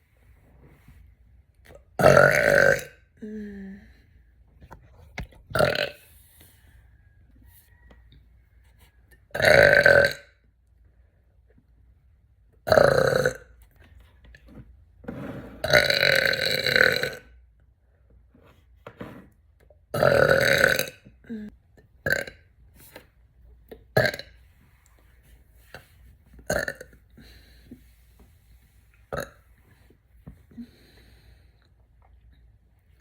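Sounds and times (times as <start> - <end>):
woman burping: 2.0 - 3.8, 20.0 - 22.4, 26.5 - 27.0.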